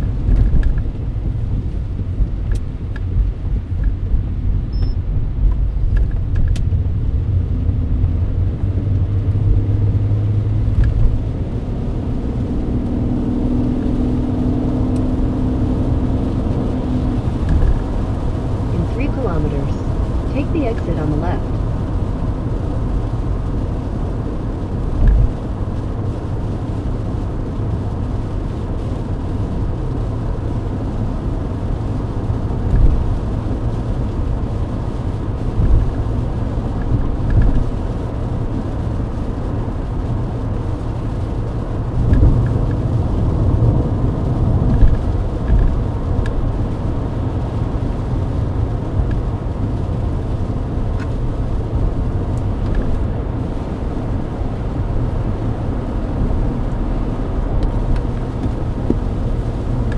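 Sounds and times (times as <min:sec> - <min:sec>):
dull low thumps: 0:00.0 - 0:11.9, 0:41.5 - 0:47.5
car cabin rumble: 0:00.0 - 0:59.9
tyres on wet road: 0:00.0 - 0:59.9.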